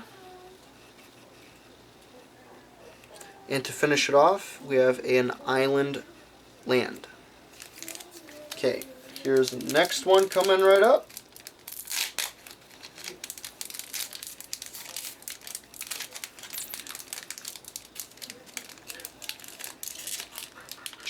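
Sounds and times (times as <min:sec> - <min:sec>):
foil wrapper tearing and crinkling: 0:07.5 - 0:21.0.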